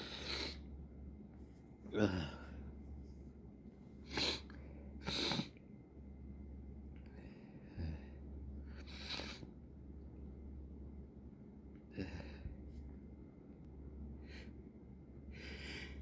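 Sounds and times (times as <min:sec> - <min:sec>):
person sneezing: 0:04.1 - 0:05.5.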